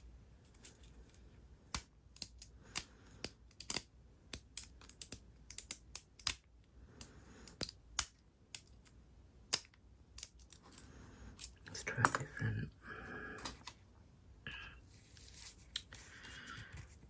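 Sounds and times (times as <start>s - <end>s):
lock pick clicking in padlock: 1.8s - 6.5s.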